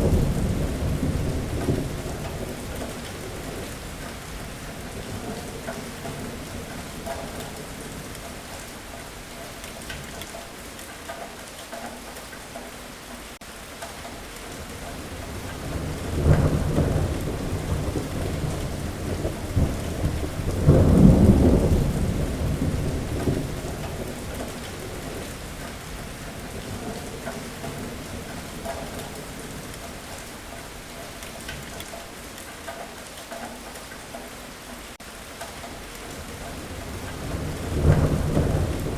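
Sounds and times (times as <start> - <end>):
thunder rumbling: 0.0 - 8.6, 14.5 - 30.5, 36.1 - 38.9
heavy rain: 0.0 - 38.9.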